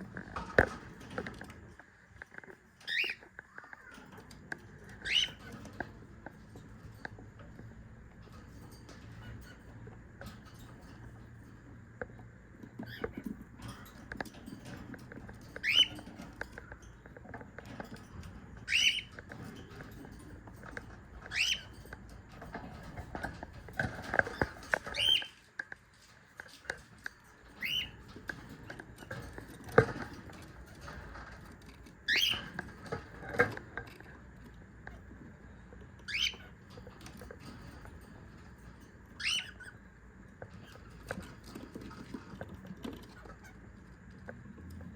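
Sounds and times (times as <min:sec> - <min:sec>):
cockatiels calling: 0:02.8 - 0:04.0, 0:04.9 - 0:05.8, 0:12.8 - 0:13.9, 0:15.5 - 0:16.3, 0:18.6 - 0:19.4, 0:21.2 - 0:21.8, 0:22.7 - 0:25.4, 0:27.6 - 0:28.1, 0:32.1 - 0:33.6, 0:36.0 - 0:36.7, 0:39.2 - 0:39.8.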